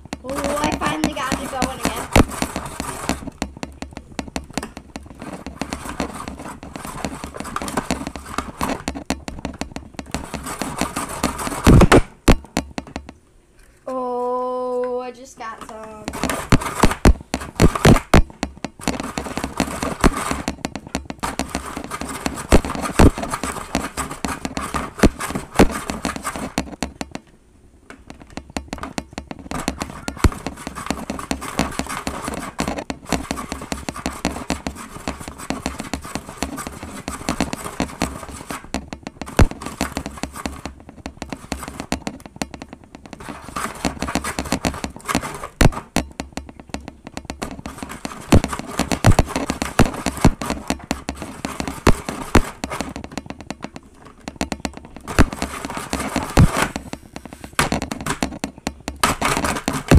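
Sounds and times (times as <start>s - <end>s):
hand-cranked ice shaver crunching: 0.0s - 12.0s, 15.4s - 26.8s, 28.1s - 59.9s.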